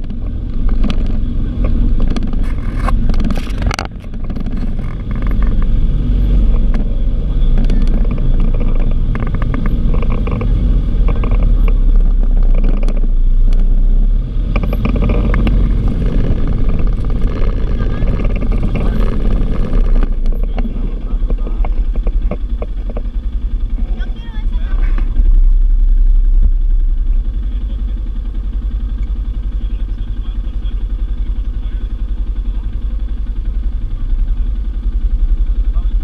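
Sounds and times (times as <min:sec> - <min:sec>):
motor vehicle low rumble: 0:00.0 - 0:36.0
clicks and knocks: 0:06.4 - 0:13.7.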